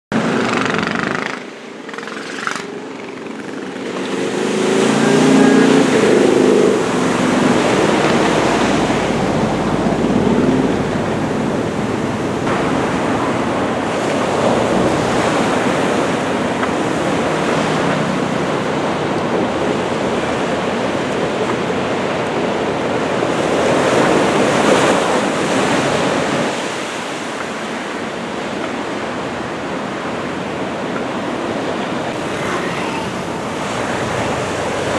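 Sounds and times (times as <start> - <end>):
ocean surf breaking: 0.1 - 34.9
wind on microphone: 1.9 - 34.9.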